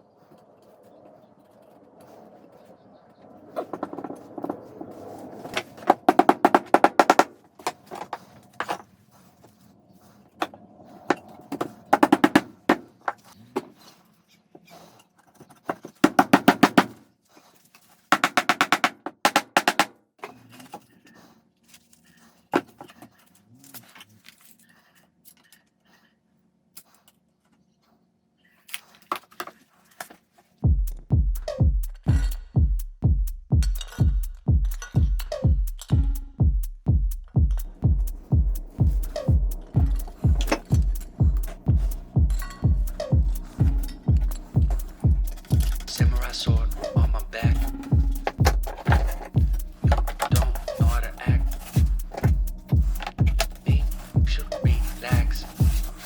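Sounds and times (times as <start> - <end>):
rapid rattling knocks: 5.7 - 7.8, 11.9 - 12.9, 37.4 - 56.0.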